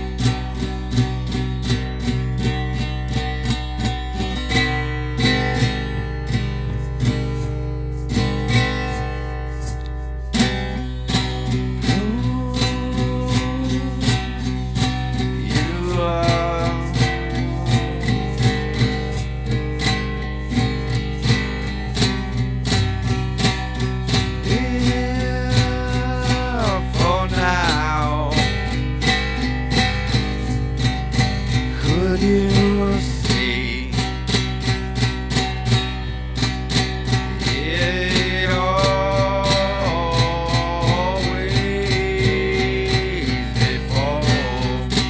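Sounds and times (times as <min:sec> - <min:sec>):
strummed guitar over a beat: 0:00.0 - 0:45.0.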